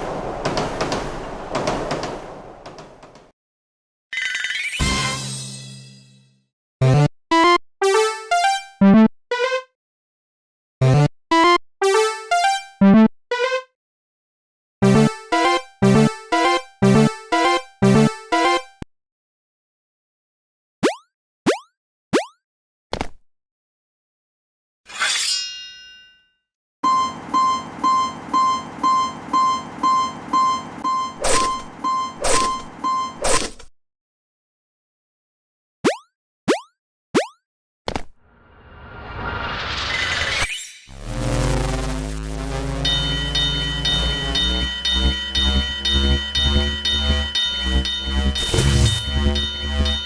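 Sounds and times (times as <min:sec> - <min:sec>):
sharp hits: 0:00.0 - 0:03.3, 0:42.4 - 0:50.0
railroad crossing alarm dinging: 0:26.8 - 0:33.2, 0:42.8 - 0:50.0
synthesized electronic melody: 0:41.0 - 0:50.0
metallic strike ringing: 0:42.8 - 0:50.0.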